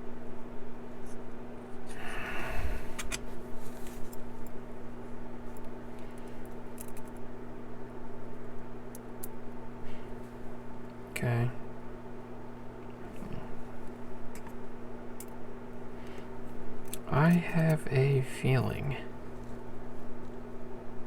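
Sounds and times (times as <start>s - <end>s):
electrical hum: 0.0s - 21.0s
small metal lock parts clicking: 6.8s - 7.2s.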